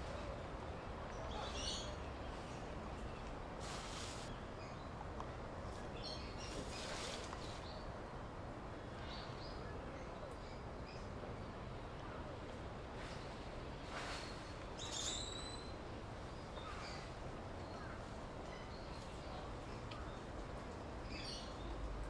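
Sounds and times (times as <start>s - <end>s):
outdoor background noise: 0.0s - 22.0s
rustling bursts: 3.6s - 4.3s.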